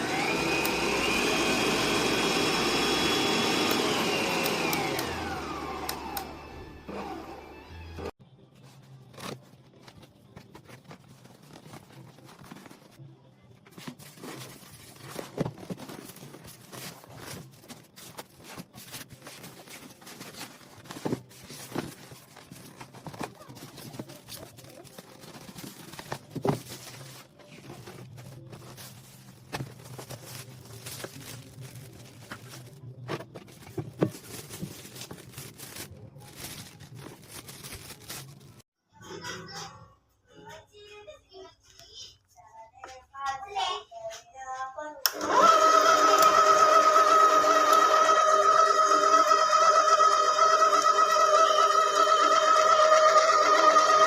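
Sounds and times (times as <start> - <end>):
plastic packaging crinkling: 8.6 - 13.0, 13.6 - 38.6
knocks and clatters of handling: 8.6 - 38.6.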